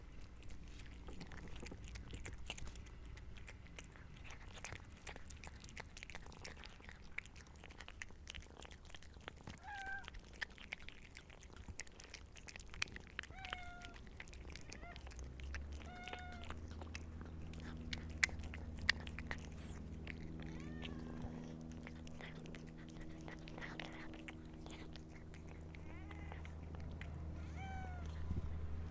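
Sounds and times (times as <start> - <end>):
cat chewing: 0.0 - 28.9
low steady hum: 0.0 - 28.9
cat mewing: 9.6 - 10.2, 13.2 - 16.8, 19.6 - 28.5.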